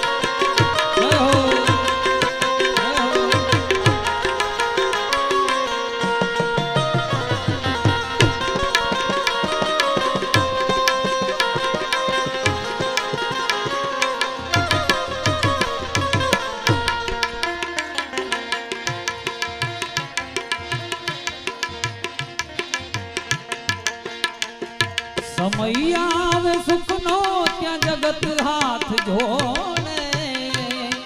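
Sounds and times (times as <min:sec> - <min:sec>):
harmonium melody: 0:00.0 - 0:31.0
tabla: 0:00.0 - 0:31.0.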